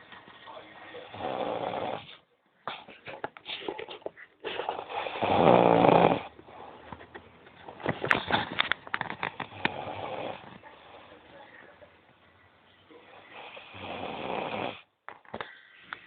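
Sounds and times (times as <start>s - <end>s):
cat snoring: 1.0s - 2.2s, 4.5s - 6.8s, 9.4s - 11.2s, 13.0s - 14.9s.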